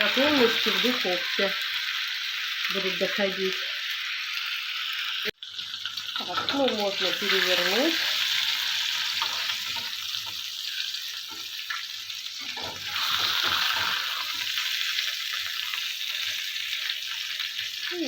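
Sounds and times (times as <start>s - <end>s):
chicken sizzling in oil: 0.0s - 18.0s
utensil scraping pan: 12.4s - 14.5s.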